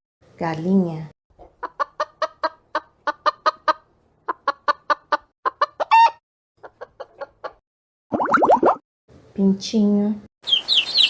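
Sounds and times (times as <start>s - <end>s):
hen clucking: 1.4s - 7.6s.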